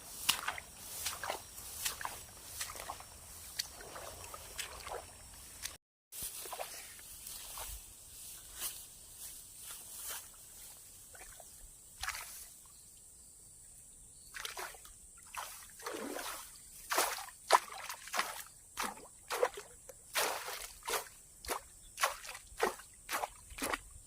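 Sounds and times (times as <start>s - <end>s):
water splashing: 0.0s - 5.8s, 14.4s - 23.8s
footsteps wading through mud: 0.0s - 11.4s, 14.4s - 23.9s.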